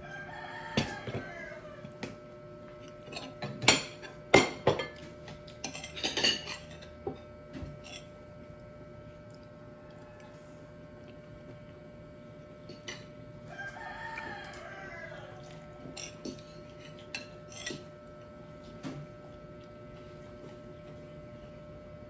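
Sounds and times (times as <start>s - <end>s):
rooster crowing: 0.0s - 2.0s, 9.8s - 10.9s, 13.4s - 16.2s.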